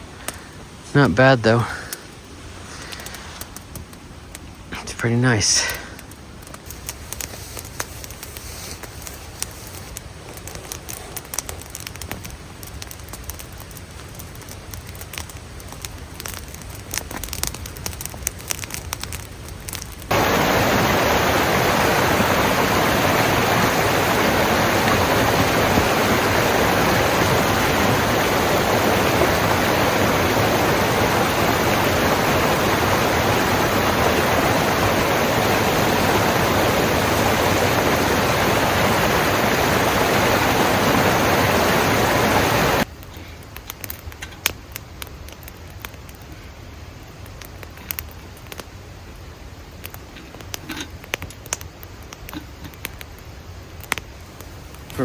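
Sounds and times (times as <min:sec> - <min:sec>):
creek rushing: 0:00.0 - 0:06.4, 0:20.1 - 0:42.9
campfire crackling: 0:00.0 - 0:55.0.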